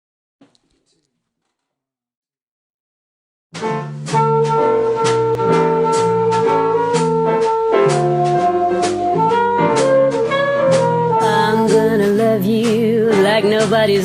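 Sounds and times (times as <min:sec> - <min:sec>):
held horn chords: 0:03.6 - 0:13.4
steady drum beat: 0:03.6 - 0:14.0
person singing: 0:11.2 - 0:14.0.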